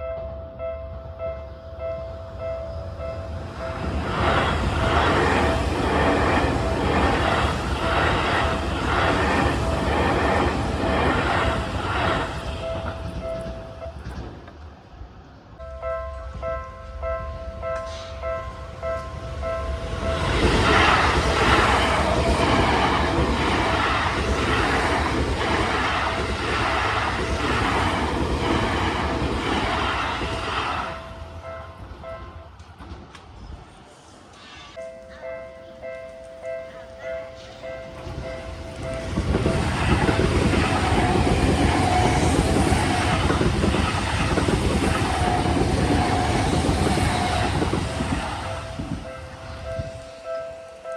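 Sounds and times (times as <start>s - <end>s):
level crossing warning bell: 0.0s - 14.1s, 15.6s - 32.6s, 34.8s - 50.9s
electric train passing: 0.0s - 50.9s
train wheels clattering over rail joints: 3.8s - 14.8s.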